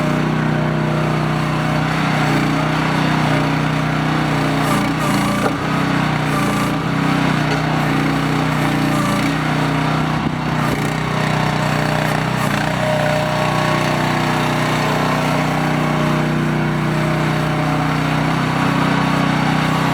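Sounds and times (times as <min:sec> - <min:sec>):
excavator engine running: 0:01.8 - 0:11.0.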